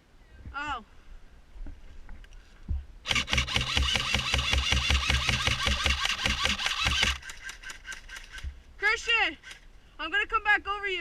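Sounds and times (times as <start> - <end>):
airsoft gun firing full-auto: 3.1 - 8.4.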